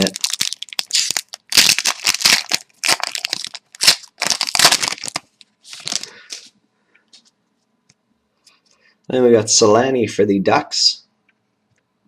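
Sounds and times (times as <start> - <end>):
plastic wrapper tearing and crinkling: 0.0 - 6.5.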